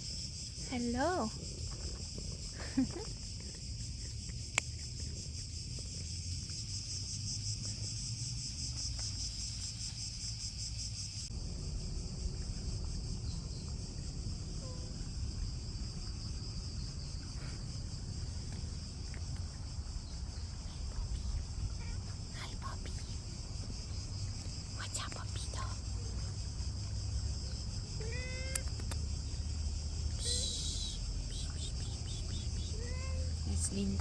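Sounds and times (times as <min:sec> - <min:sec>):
low background rumble: 0:00.0 - 0:34.0
insects shrilling: 0:27.4 - 0:34.0.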